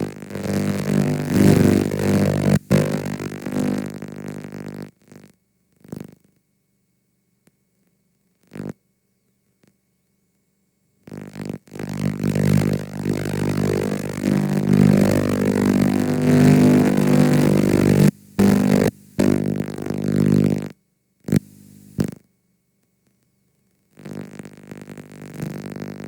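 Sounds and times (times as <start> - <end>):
loud low buzz: 0.0 - 3.8, 12.1 - 20.7, 21.3 - 22.2
tape hiss: 0.0 - 4.9, 11.6 - 22.3, 24.0 - 26.0.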